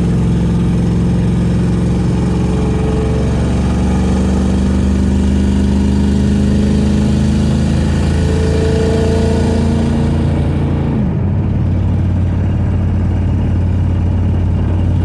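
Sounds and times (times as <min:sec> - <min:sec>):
car engine running while driving: 0:00.0 - 0:15.0.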